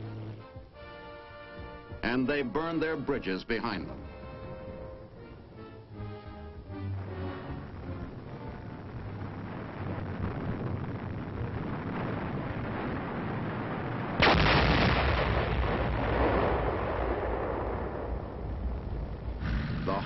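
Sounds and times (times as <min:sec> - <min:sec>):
rumbling crackling noise: 0:00.0 - 0:20.0
demolition blast: 0:07.5 - 0:20.0.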